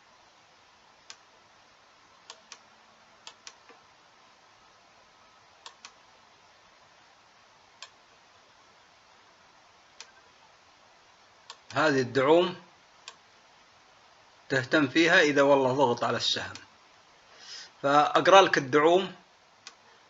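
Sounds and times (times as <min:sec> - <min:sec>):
faint room hiss: 0:00.0 - 0:20.0
computer mouse clicking: 0:03.2 - 0:03.8, 0:05.6 - 0:06.0.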